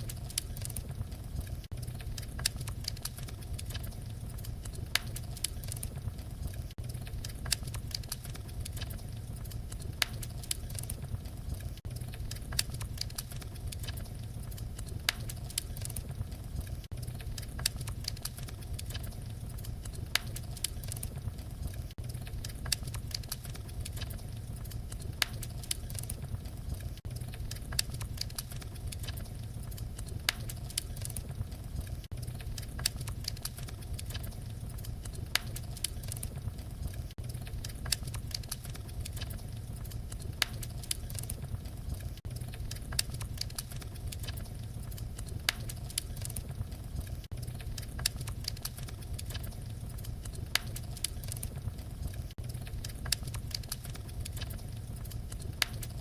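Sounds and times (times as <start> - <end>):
fire crackling with pops: 0.0 - 56.0.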